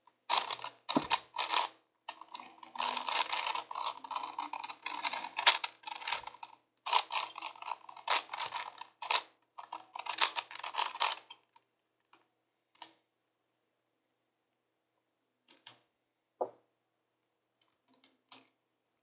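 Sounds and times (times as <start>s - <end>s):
plastic puzzle cube clicking: 0.3s - 11.3s.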